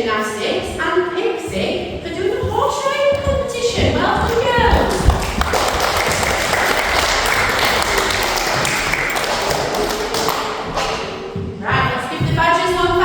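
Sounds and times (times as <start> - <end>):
children applauding: 4.7 - 10.8.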